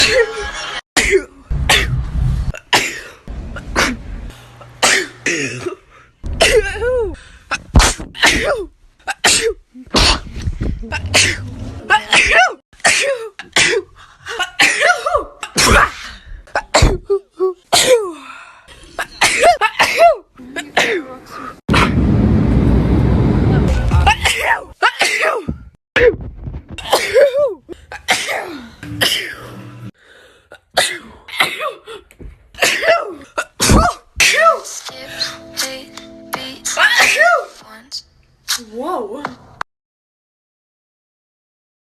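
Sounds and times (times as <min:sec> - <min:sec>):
woman sneezing: 0:10.9 - 0:13.8, 0:14.6 - 0:16.1, 0:32.6 - 0:34.7.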